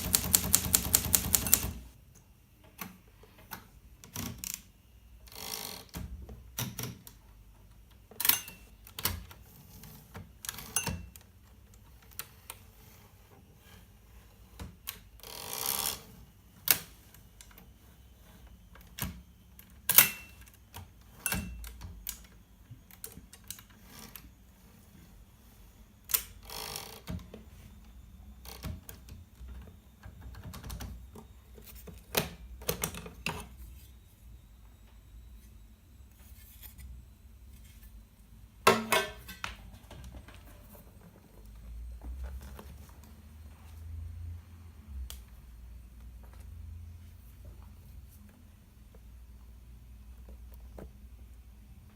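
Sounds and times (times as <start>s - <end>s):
typewriter mechanism clacking: 0.0s - 1.9s.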